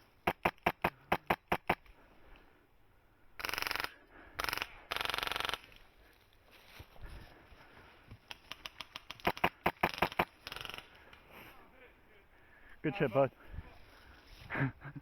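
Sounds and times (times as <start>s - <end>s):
airsoft rifle firing: 0.2s - 1.8s, 3.4s - 5.7s, 8.5s - 10.9s.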